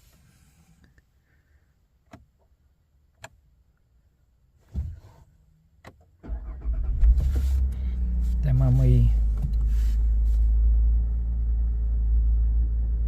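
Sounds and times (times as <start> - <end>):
car engine starting and rumbling: 4.8 - 13.0.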